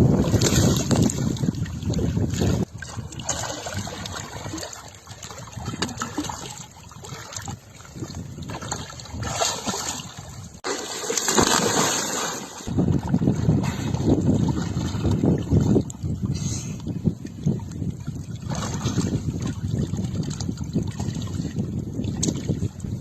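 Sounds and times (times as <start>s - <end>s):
water trickling and splashing: 0.0s - 23.0s.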